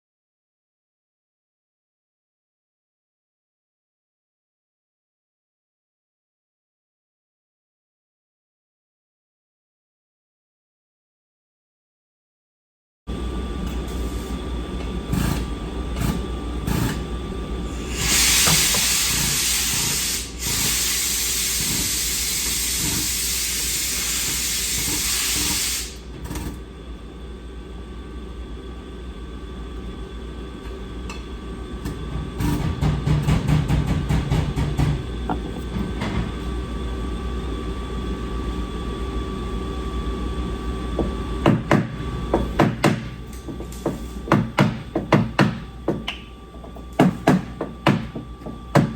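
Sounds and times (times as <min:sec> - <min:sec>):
loud steady hiss: 0:17.8 - 0:26.0.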